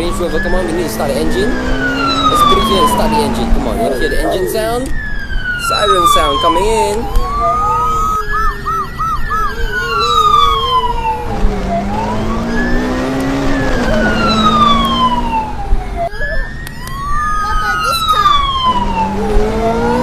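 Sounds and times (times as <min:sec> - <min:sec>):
police sirens wailing: 0:00.0 - 0:20.0
quick siren whoops: 0:00.0 - 0:20.0
warbling siren tone: 0:00.0 - 0:20.0.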